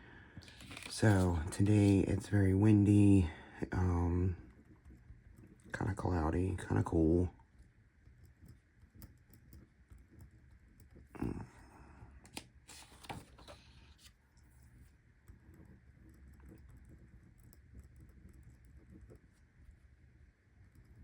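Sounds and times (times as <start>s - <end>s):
paper rustling: 0.4s - 2.2s, 12.2s - 14.1s
light clicks and taps: 6.6s - 11.1s.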